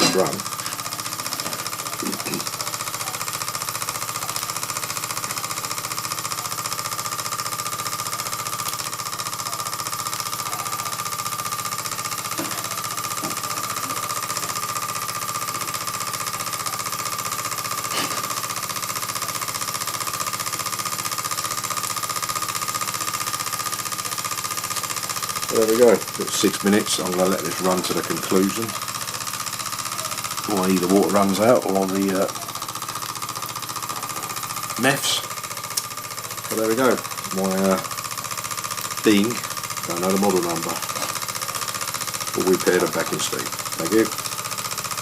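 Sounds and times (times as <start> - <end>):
toy steam engine running: 0.0 - 45.0.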